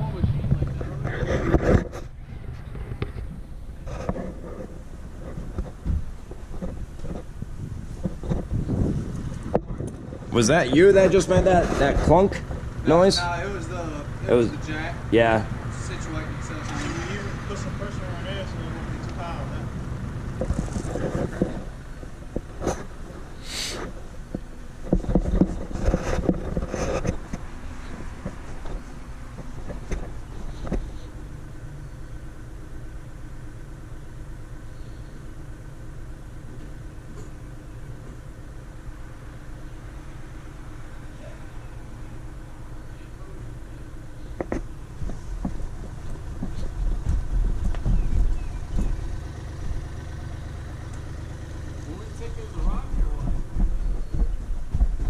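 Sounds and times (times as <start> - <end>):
backhoe engine running: 0.0 - 55.0
clunks and knocks: 0.2 - 12.7, 20.3 - 31.0, 44.4 - 50.2, 52.2 - 55.0
short hiss: 23.4 - 24.0.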